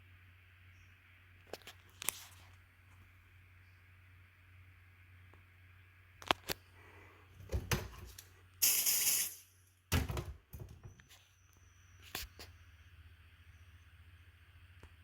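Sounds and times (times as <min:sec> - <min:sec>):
aerosol can hissing: 0:08.6 - 0:09.5.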